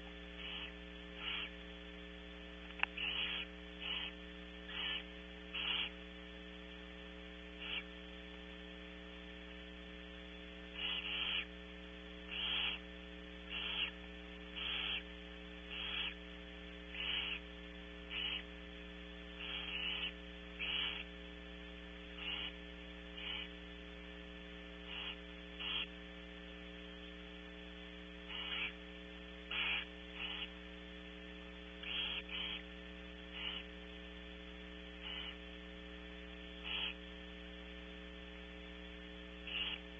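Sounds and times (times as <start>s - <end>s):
electrical hum: 0.0s - 39.9s
owl nestlings hissing: 0.3s - 1.6s, 2.8s - 6.0s, 7.6s - 7.9s, 10.8s - 11.6s, 12.3s - 16.3s, 16.9s - 17.5s, 18.1s - 18.6s, 19.3s - 21.1s, 22.0s - 23.6s, 24.8s - 26.0s, 28.2s - 28.8s, 29.4s - 30.6s, 31.8s - 32.7s, 33.3s - 33.8s, 35.0s - 35.5s, 36.6s - 37.1s, 39.4s - 39.9s.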